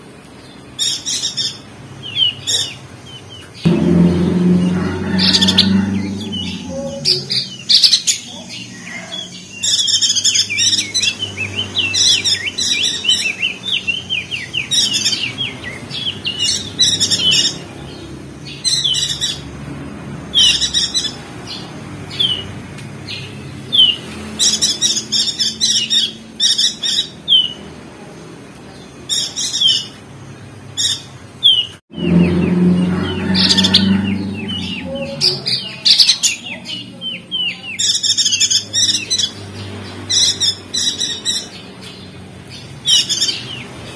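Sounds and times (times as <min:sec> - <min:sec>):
low rumble: 0:03.7 - 0:08.1, 0:31.9 - 0:35.8.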